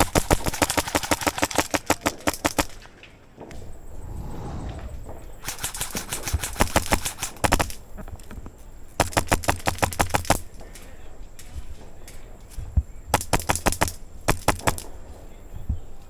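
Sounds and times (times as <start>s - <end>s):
airsoft guns firing bursts: 0.0s - 2.8s, 5.4s - 7.8s, 9.0s - 10.4s, 13.1s - 14.8s.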